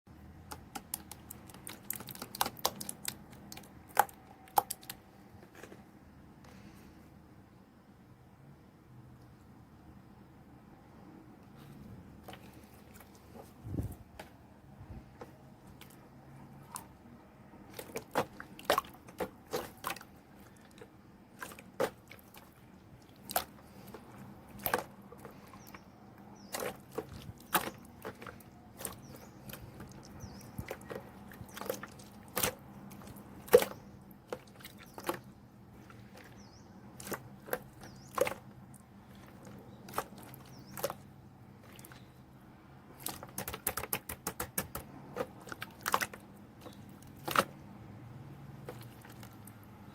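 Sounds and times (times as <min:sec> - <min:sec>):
slime clicking and popping: 0:00.5 - 0:05.0.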